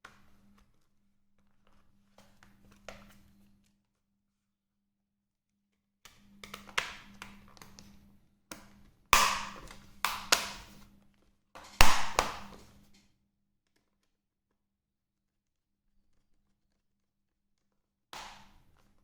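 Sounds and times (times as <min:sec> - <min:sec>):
hard plastic laptop case clicks: 0:09.2 - 0:10.7, 0:11.8 - 0:12.6.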